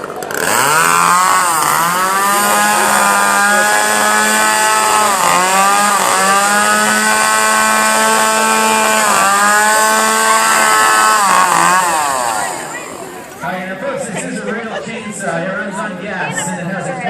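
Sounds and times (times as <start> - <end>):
chainsaw engine revving: 0.0 - 13.5.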